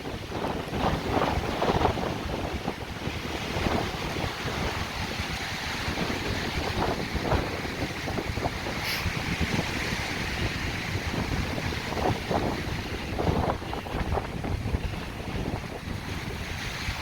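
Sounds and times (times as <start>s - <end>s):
gusting wind on microphone: 0.0s - 17.0s.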